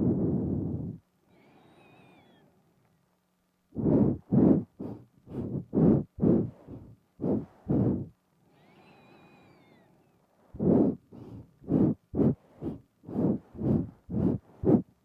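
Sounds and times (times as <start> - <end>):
quick puffing sniffs: 3.8 - 8.8, 10.5 - 14.9.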